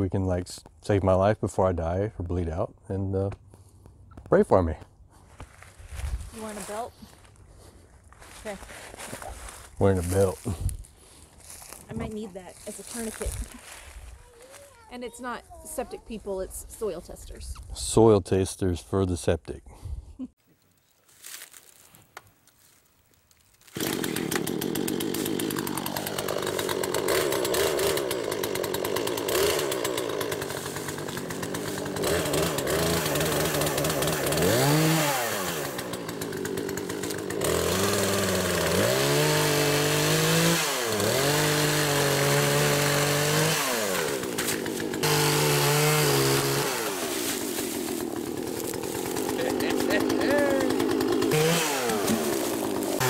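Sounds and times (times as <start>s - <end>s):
chainsaw cutting at high revs: 6.3s - 13.9s, 23.6s - 53.0s.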